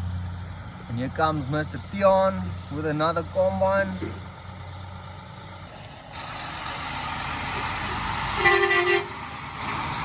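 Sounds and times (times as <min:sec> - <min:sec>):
heavy truck passing: 0:00.0 - 0:10.0
truck horn toot: 0:08.2 - 0:09.3.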